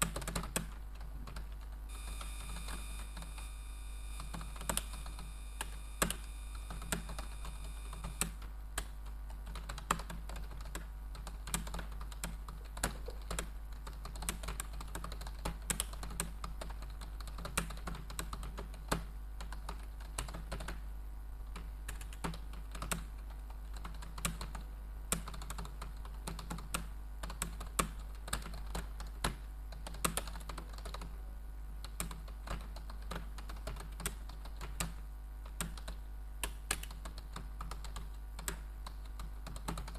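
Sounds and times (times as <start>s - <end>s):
keyboard typing: 0.0s - 20.8s, 21.5s - 31.1s, 31.8s - 39.9s
low hum: 1.0s - 8.4s.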